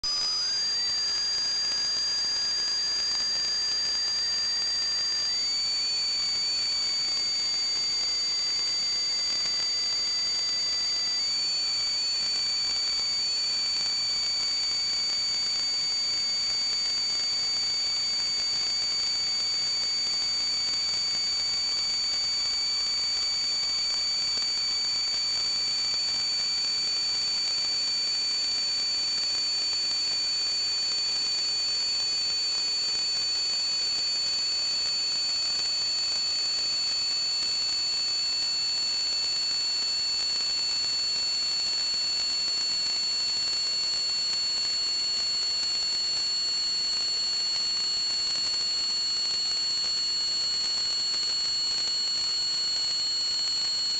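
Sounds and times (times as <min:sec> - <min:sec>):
high-pitched whistle: 0:00.0 - 0:15.1.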